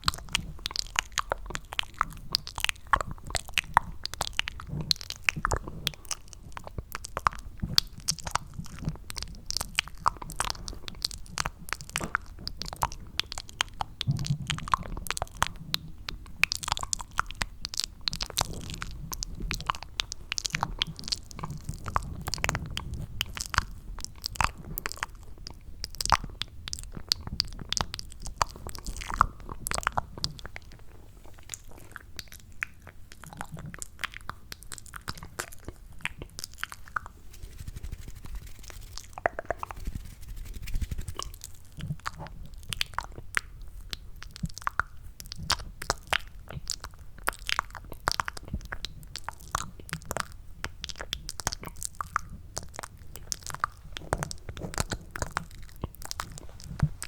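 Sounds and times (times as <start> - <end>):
mouth clicks and smacks: 31.5 - 57.0.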